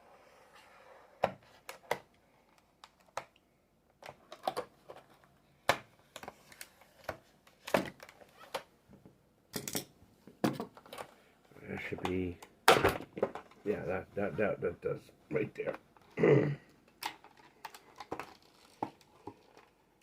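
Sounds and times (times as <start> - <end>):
plastic packaging clicking and crackling: 16.8 - 20.0.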